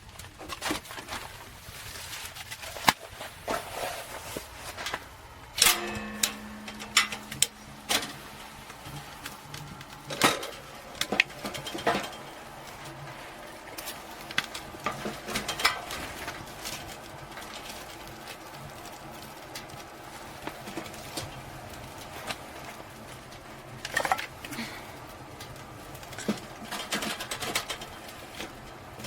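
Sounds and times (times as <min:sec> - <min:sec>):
hard objects clattering: 0:00.1 - 0:29.0
ringing metallic clank: 0:05.6 - 0:07.5.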